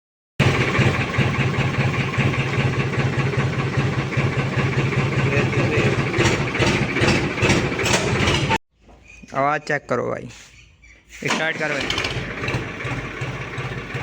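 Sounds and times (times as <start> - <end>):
tractor diesel engine idling: 0.4 - 8.6, 11.2 - 14.0.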